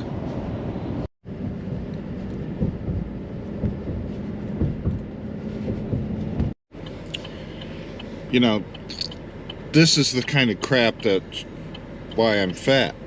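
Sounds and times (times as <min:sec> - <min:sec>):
car road noise rumble: 0:00.0 - 0:13.0
light bumps: 0:01.3 - 0:06.6.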